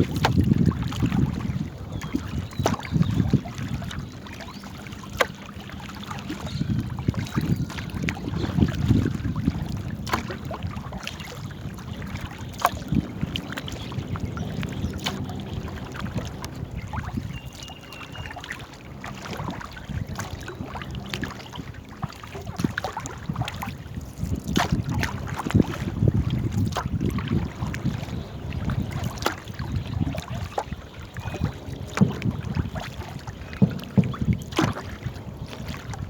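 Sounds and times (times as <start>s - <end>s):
paddle knocking against hull: 0.0s - 36.0s
steady low rumble: 12.8s - 17.2s, 23.8s - 29.0s.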